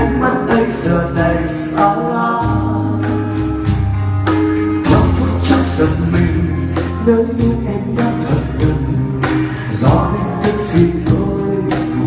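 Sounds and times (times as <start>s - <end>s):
acoustic guitar: 0.0s - 12.0s
person singing: 4.8s - 12.0s.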